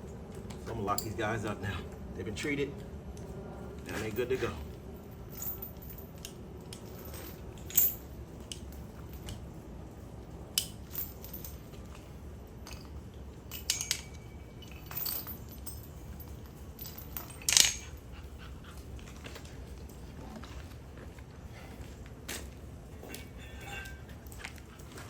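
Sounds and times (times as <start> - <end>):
metal gate and latch clinking: 3.9 - 9.4, 10.5 - 18.1.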